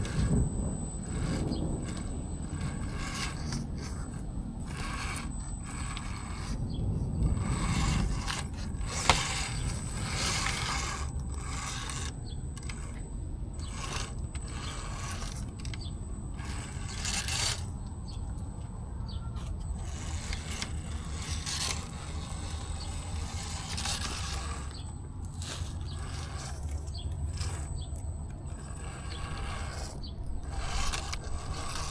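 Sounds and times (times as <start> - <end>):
high whine: 0.0 - 31.9
low rumble: 0.0 - 31.9
toy car drivetrain whirring: 0.0 - 31.9
tyres scraping over trail: 0.0 - 31.9.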